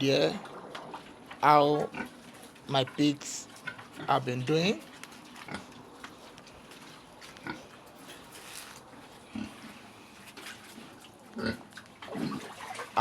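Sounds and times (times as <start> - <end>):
young pigs grunting: 9.2 - 10.1, 11.4 - 13.0.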